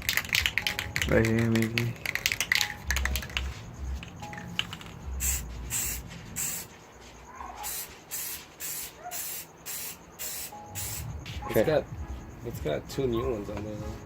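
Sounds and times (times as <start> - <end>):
hissing spray bursts: 5.2 - 6.7, 7.6 - 11.1.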